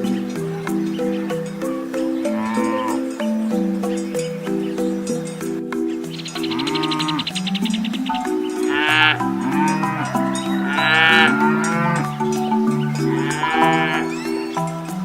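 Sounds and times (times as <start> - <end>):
music with mallet notes and beat: 0.0 - 15.0
cattle mooing: 2.2 - 3.2, 6.4 - 7.4, 8.6 - 14.2.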